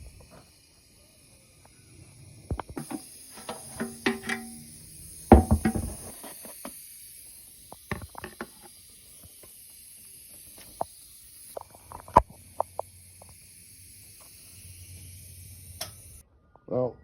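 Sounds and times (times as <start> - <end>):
steady hiss: 0.0 - 16.2
tools and parts clicking and knocking: 2.7 - 4.7, 5.3 - 6.8, 7.8 - 8.7.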